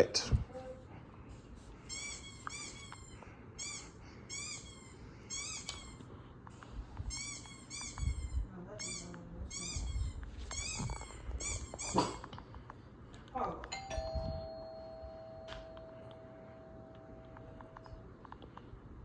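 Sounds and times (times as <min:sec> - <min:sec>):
dog yips and whimpers: 0:01.8 - 0:06.1, 0:07.0 - 0:12.4.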